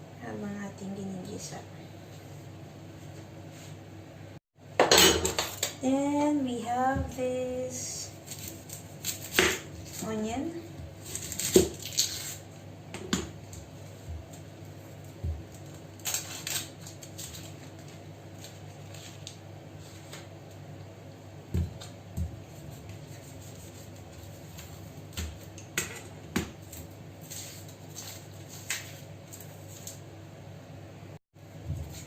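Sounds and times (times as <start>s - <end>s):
kitchen utensils knocking and tapping: 4.8s - 5.7s.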